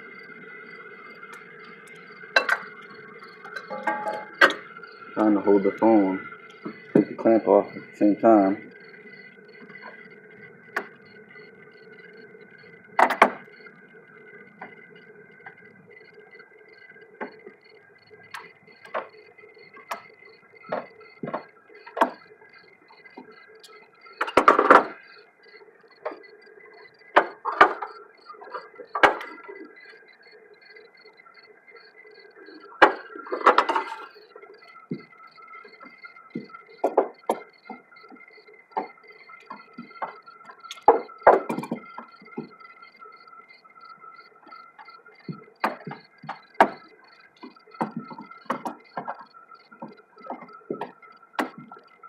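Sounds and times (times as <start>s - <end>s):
faint high-pitched tone: 0.0s - 46.3s
faint steady hum: 0.0s - 52.0s.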